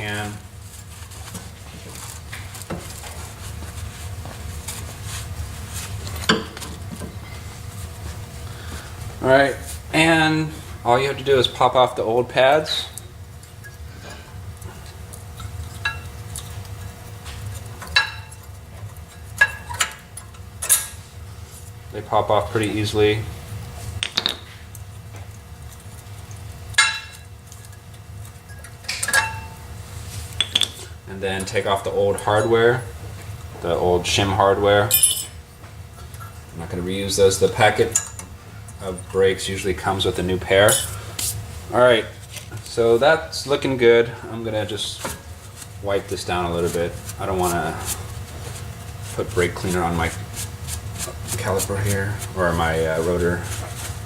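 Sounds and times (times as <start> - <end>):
rustling of wiping by hand: 0.5 - 6.2, 44.8 - 54.0
metal clinks: 34.9 - 35.4.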